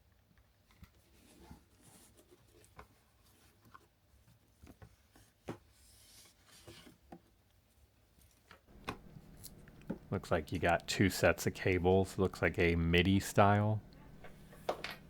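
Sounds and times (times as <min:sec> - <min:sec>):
soft handling rubbing: 0:08.7 - 0:15.0.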